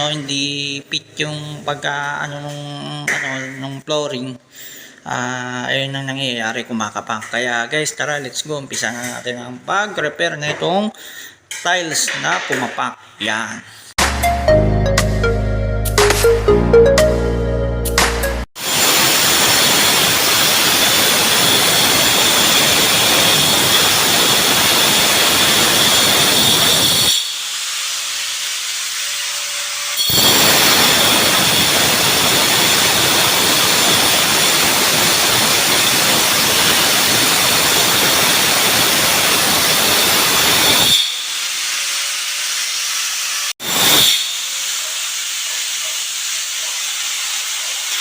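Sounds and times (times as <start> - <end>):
angle grinder cutting tile: 18.6 - 48.0.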